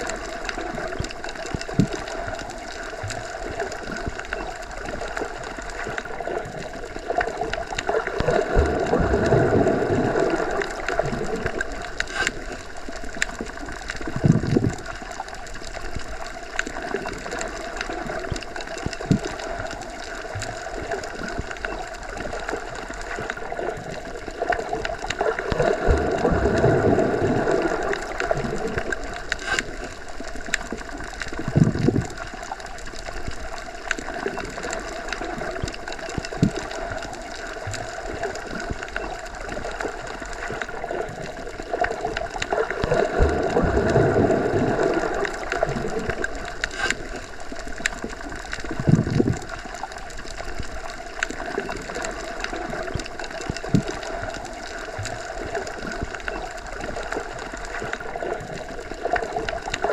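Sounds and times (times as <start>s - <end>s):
underwater wash and gurgling: 0.0s - 59.9s.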